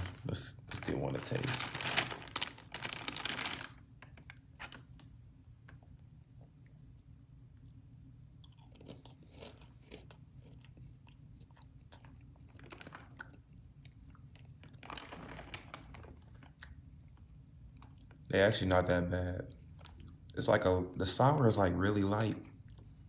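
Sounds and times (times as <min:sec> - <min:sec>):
person crunching dry cereal: 0:00.0 - 0:03.8, 0:08.4 - 0:13.4.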